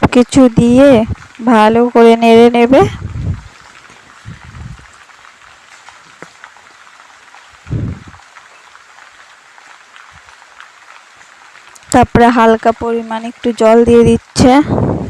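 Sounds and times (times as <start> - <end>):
heavy rain hissing: 0.0 - 15.0
short low thuds: 2.9 - 3.5, 4.2 - 4.8, 7.7 - 8.2.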